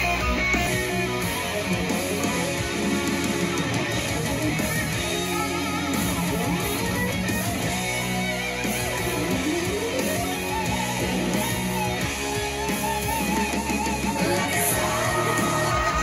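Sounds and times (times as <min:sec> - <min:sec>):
instrumental guitar music: 0:00.0 - 0:16.0.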